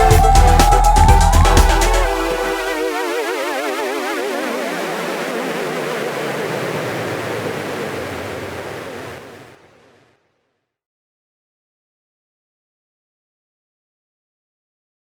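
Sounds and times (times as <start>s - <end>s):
wobbling synthesizer note: 0.0s - 6.8s
hissing noise wash: 0.0s - 10.0s.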